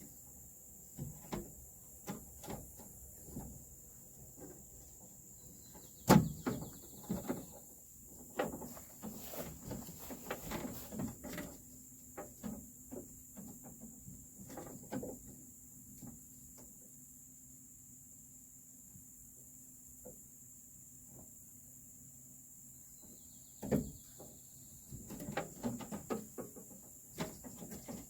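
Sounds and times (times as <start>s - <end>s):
light metal taps and rattles: 8.2s - 16.7s, 24.9s - 28.0s.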